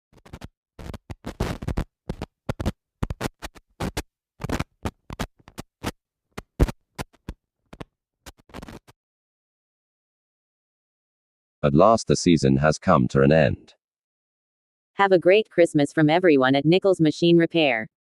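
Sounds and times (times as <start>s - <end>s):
scratchy noise bursts: 0.1s - 8.9s.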